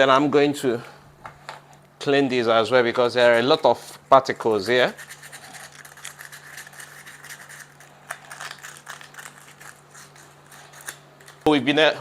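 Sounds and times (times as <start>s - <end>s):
sandpaper scratching on metal: 4.6s - 7.8s.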